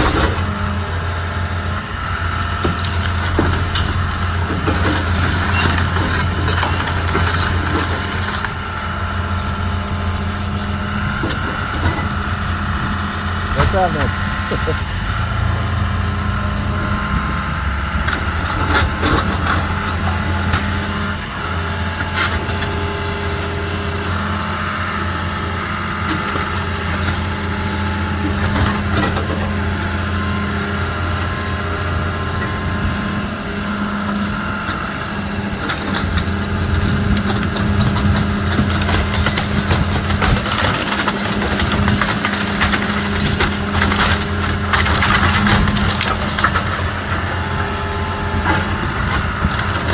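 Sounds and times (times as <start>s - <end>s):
diesel engine running: 0.0s - 49.9s
debris knocking and crunching: 2.3s - 9.4s, 35.7s - 49.9s.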